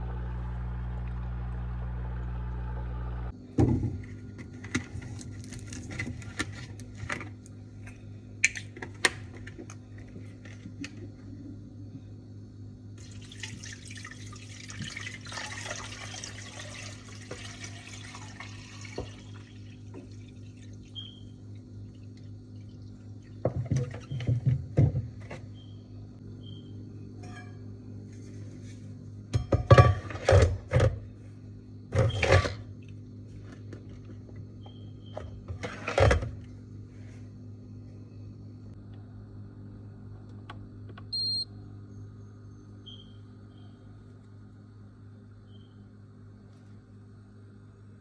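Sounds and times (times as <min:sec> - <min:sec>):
steady low hum: 0:00.0 - 0:15.0
water running: 0:13.0 - 0:23.4.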